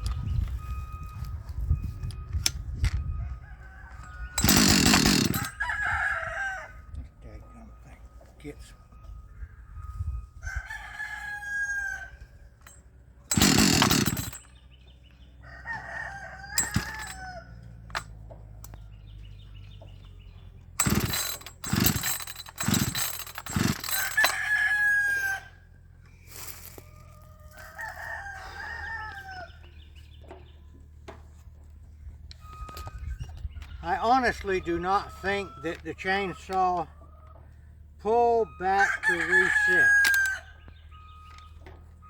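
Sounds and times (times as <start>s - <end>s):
rooster crowing: 3.1s - 7.0s, 10.4s - 12.4s, 15.4s - 17.8s, 23.6s - 25.7s, 26.4s - 29.8s, 34.3s - 37.6s, 38.5s - 41.1s
chainsaw starter cord yanks: 4.0s - 5.6s, 12.6s - 14.6s, 16.6s - 17.2s, 17.8s - 18.8s, 20.8s - 24.6s, 39.1s - 40.4s.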